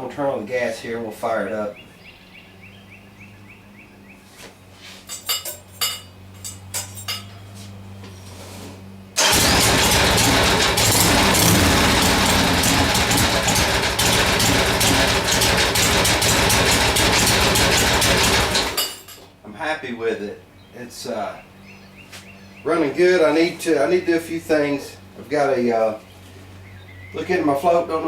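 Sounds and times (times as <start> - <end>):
motorcycle engine running: 9.2 - 19.0.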